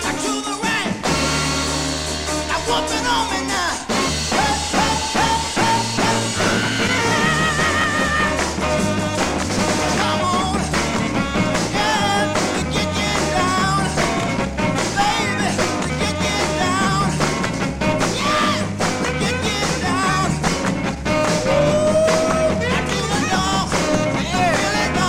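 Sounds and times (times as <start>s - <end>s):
up-tempo soul band music: 0.0s - 25.0s.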